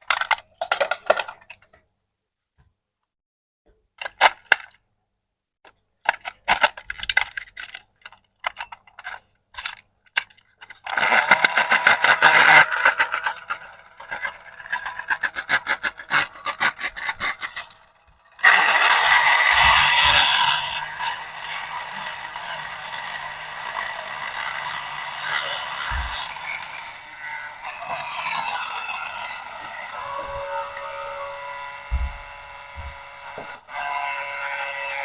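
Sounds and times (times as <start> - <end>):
plastic toy parts clicking: 0.0 - 1.7, 4.0 - 4.8, 6.0 - 30.8.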